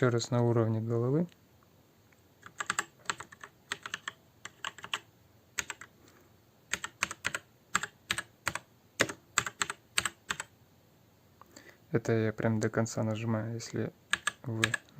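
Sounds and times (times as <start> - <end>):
mechanical keyboard typing: 2.4 - 5.9, 6.7 - 10.5, 14.1 - 14.9.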